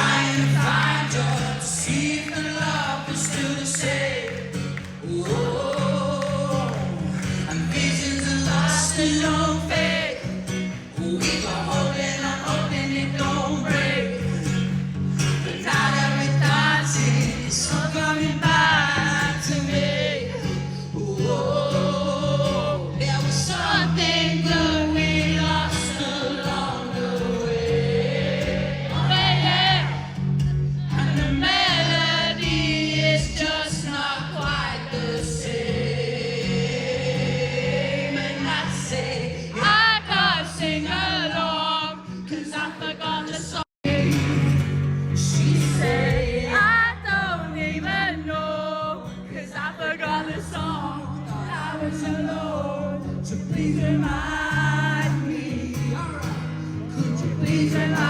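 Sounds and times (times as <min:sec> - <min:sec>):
acoustic guitar chords: 0:00.0 - 0:58.0
audience singing along: 0:00.0 - 0:58.0
person singing: 0:30.8 - 0:58.0.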